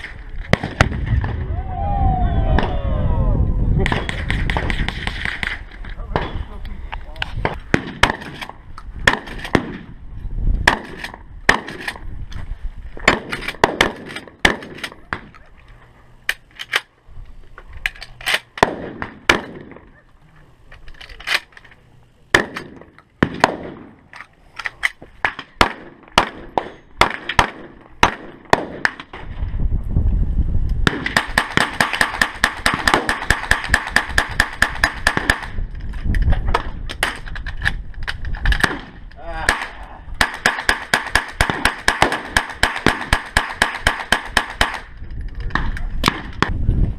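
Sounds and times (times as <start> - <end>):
gunshots: 7.4 - 9.9, 13.0 - 15.3, 18.3 - 19.9, 22.3 - 24.0, 25.2 - 29.3, 30.8 - 35.6, 38.5 - 44.9.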